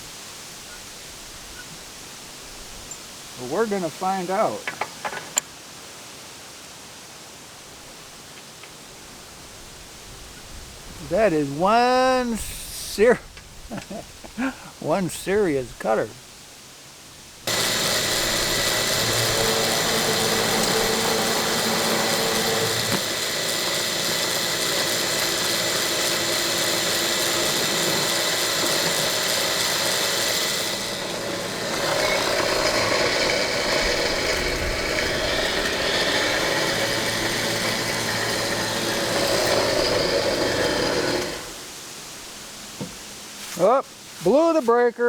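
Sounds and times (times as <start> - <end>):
electric motor spinning blade: 17.5 - 41.7.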